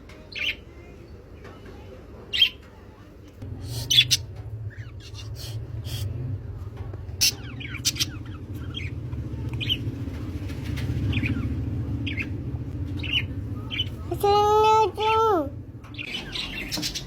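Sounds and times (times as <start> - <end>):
steady low hum: 3.2 - 17.0
parrots chirping: 3.7 - 6.1, 7.1 - 10.0, 10.8 - 14.2, 15.9 - 17.0.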